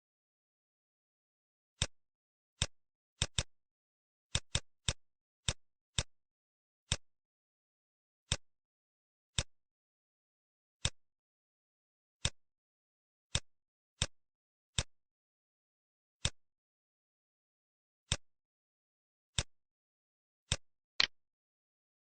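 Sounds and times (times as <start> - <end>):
computer mouse clicking: 2.6 - 3.5.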